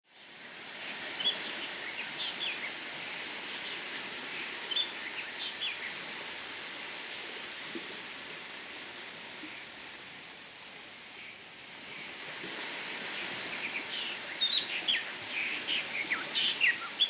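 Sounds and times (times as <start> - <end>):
sea waves: 0.1 - 17.0
birds chirping: 13.5 - 17.0.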